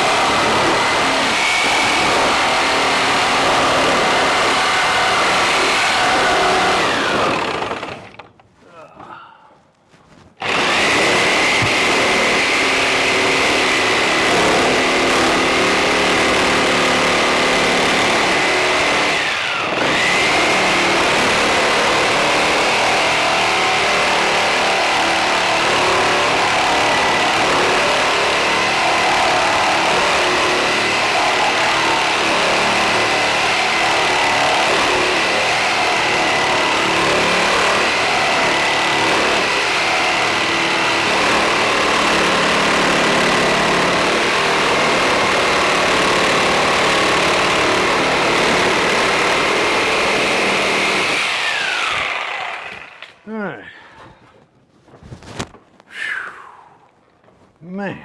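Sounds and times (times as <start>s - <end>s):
power saw cutting wood: 0.0s - 8.3s, 10.4s - 53.2s.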